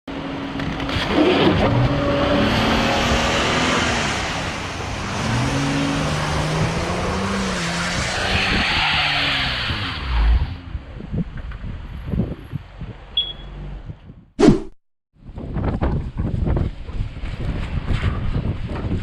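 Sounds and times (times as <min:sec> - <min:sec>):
vehicle engine revving: 0:00.7 - 0:08.6.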